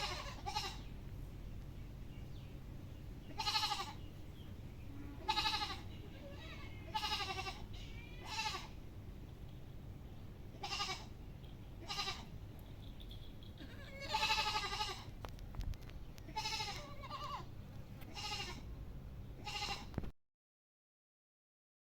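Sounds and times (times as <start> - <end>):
goat bleating: 0.0 - 0.9, 3.2 - 4.1, 5.0 - 8.9, 10.5 - 11.2, 11.8 - 12.4, 13.6 - 15.2, 16.2 - 18.7, 19.4 - 20.0.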